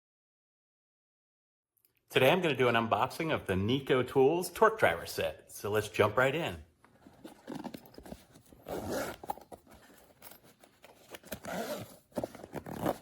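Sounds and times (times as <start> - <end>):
packaging rustling and scraping: 6.9 - 13.0.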